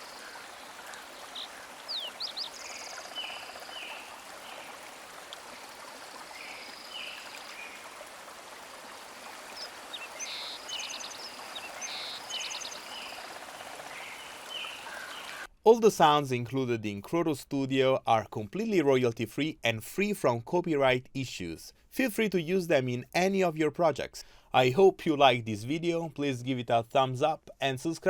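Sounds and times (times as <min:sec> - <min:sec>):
stream flowing: 0:00.0 - 0:15.5.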